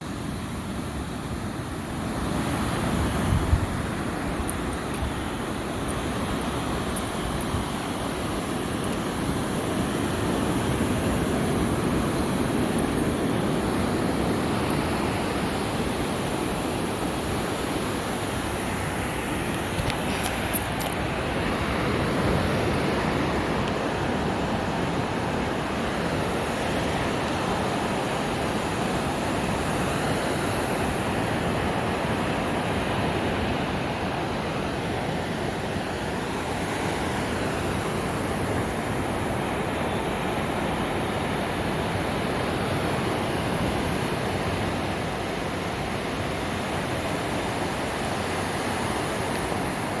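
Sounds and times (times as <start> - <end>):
sea surf washing on beach: 0.0 - 50.0.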